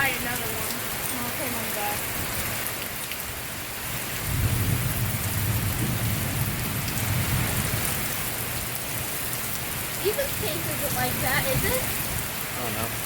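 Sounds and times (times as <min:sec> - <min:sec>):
rain falling: 0:00.0 - 0:13.0
low rumble of thunder: 0:03.9 - 0:12.3.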